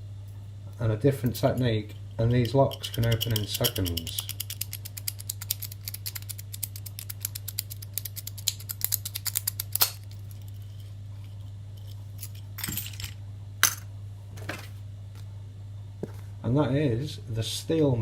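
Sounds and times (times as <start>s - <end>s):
low steady hum: 0.0s - 18.0s
lock pick metallic clicking: 2.7s - 10.2s.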